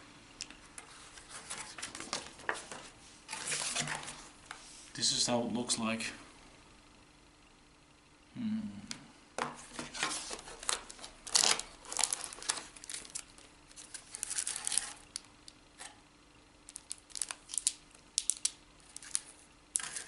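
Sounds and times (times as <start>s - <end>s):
packaging crinkling and rustling: 1.1s - 4.3s, 9.6s - 15.9s, 16.7s - 20.0s.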